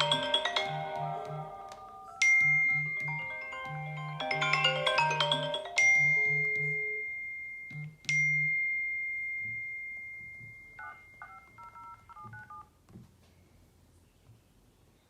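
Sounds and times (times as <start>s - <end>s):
bell-like chime: 0.0s - 11.2s
keypad dialing tones: 10.8s - 12.7s.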